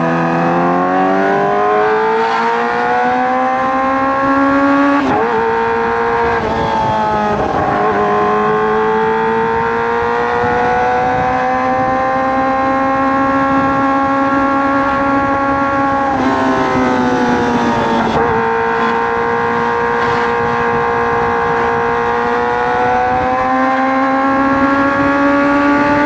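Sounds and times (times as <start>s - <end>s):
motorcycle engine revving: 0.0s - 26.0s.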